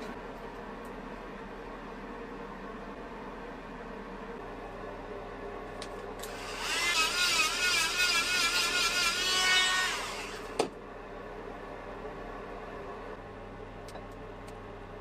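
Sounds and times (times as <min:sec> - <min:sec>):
power tool whining: 0:06.2 - 0:10.6.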